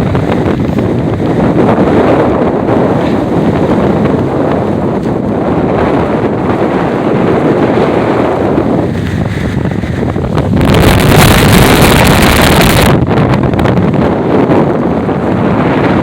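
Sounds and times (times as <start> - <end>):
high wind blasting microphone: 0.0 - 16.0.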